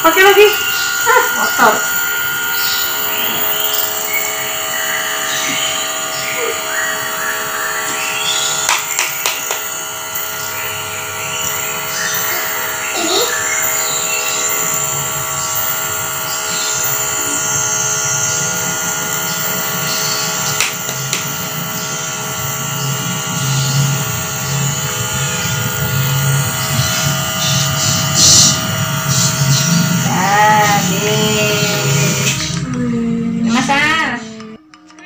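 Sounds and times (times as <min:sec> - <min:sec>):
nebulizer humming: 0:00.0 - 0:34.8.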